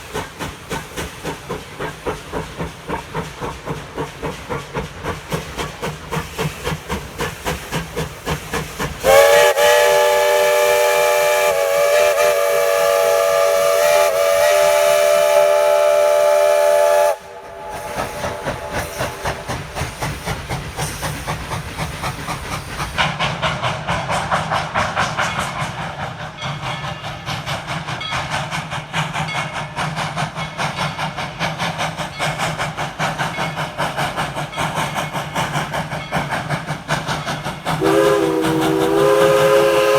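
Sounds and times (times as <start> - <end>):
steam locomotive chuffing: 0.0 - 39.9
steam locomotive chime whistle: 9.0 - 21.4, 37.2 - 39.9.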